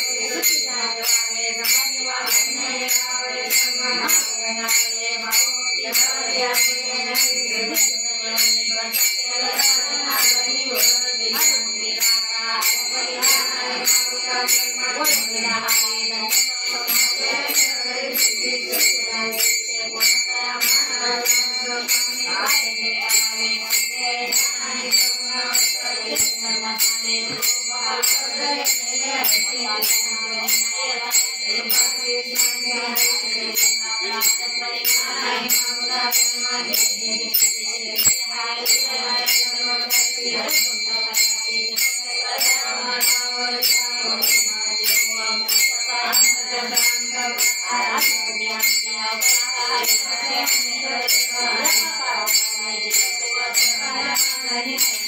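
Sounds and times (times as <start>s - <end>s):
hand cymbals struck: 0.0s - 55.0s
voices singing devotional song: 0.0s - 55.0s.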